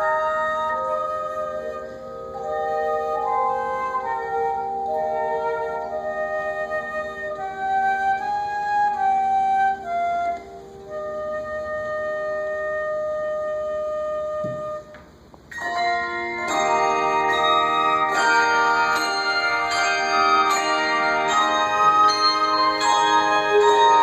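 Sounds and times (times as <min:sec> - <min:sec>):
handbell choir playing: 0:01.0 - 0:06.6, 0:15.6 - 0:24.0
bell chord struck: 0:15.6 - 0:24.0.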